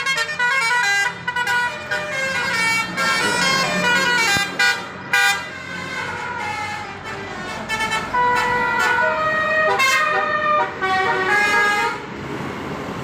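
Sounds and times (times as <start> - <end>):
multi-tone air horn tune: 7.6 - 12.0.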